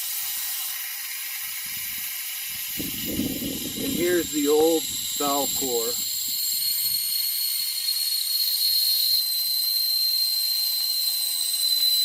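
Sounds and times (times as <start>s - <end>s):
air hissing from tire valve: 0.0s - 9.6s.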